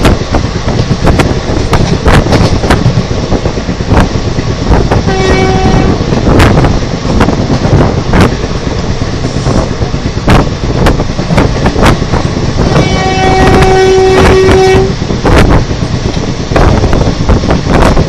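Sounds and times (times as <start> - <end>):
train wheels rumbling and clattering: 0.0 - 18.0
locomotive horn blast: 5.0 - 6.1, 12.8 - 15.0.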